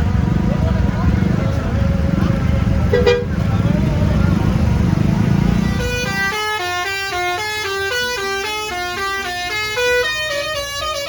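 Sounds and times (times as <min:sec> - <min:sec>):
musical bus horn playing a tune: 0:02.9 - 0:03.7, 0:05.4 - 0:11.0.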